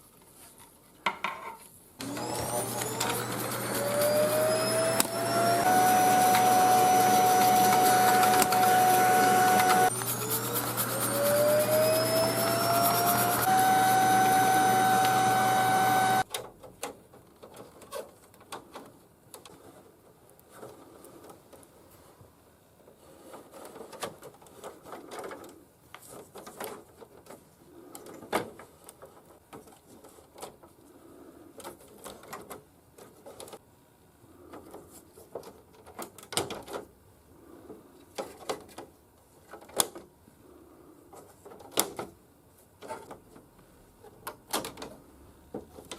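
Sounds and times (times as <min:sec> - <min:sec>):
vacuum cleaner motor whining: 0:02.0 - 0:16.2
plastic parts clicking and knocking: 0:16.3 - 0:19.8, 0:23.3 - 0:30.8, 0:31.6 - 0:33.6, 0:34.5 - 0:36.9, 0:38.1 - 0:40.1, 0:41.1 - 0:42.2, 0:42.8 - 0:45.9.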